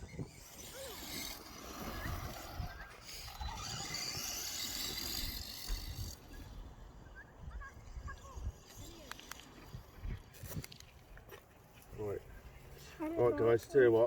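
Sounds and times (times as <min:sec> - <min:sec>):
electric toy truck motor whine: 0:00.0 - 0:06.8.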